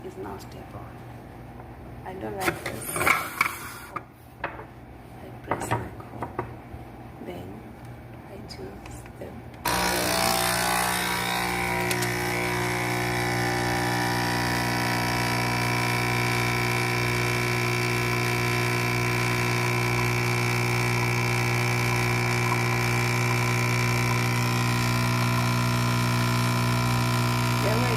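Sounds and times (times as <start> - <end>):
coffee machine pump buzzing: 9.6 - 27.9.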